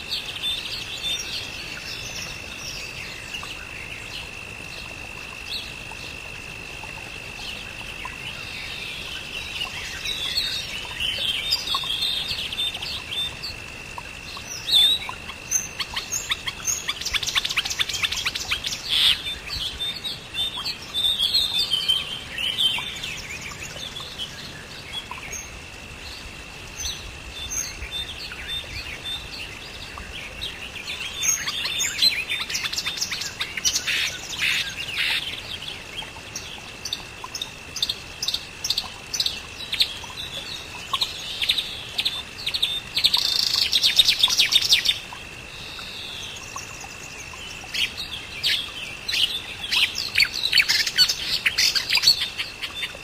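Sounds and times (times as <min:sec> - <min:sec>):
insect drone: 0:00.0 - 0:53.0
birds chirping and calling: 0:14.4 - 0:24.2, 0:30.0 - 0:35.7.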